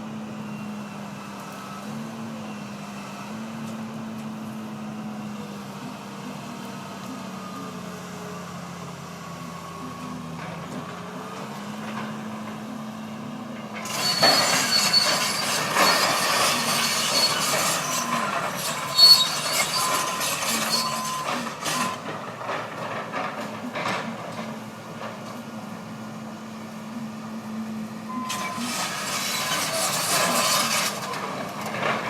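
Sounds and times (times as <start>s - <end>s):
saw grinding through wood: 13.8s - 22.0s, 28.3s - 31.2s.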